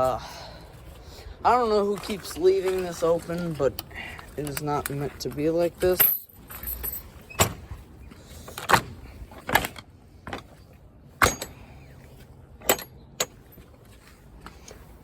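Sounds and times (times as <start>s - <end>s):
gate latch metallic clanks: 11.2s - 11.6s.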